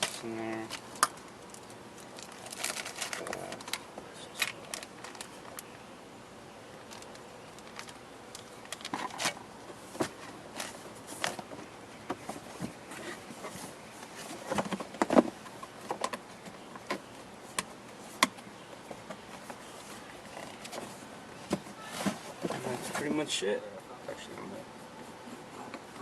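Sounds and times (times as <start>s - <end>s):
parts being handled: 0.0s - 5.7s.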